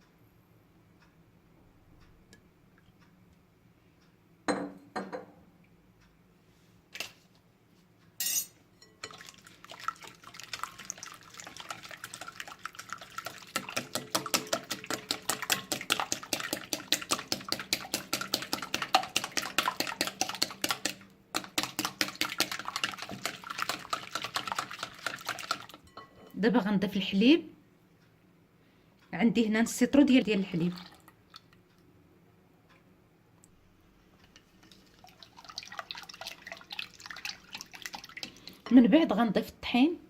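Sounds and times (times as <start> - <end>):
whisk clicking against bowl: 9.0 - 25.8
whisk knocking bowl: 9.0 - 25.8.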